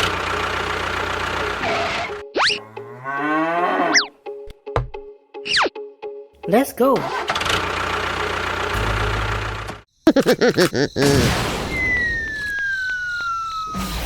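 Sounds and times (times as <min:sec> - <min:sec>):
long falling whistle: 0:11.6 - 0:14.0.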